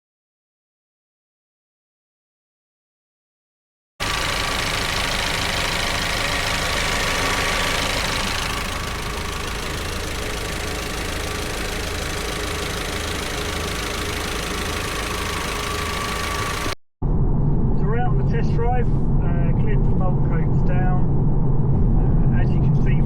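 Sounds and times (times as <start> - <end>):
car engine running: 4.0 - 16.8
faint steady whine: 4.1 - 16.8.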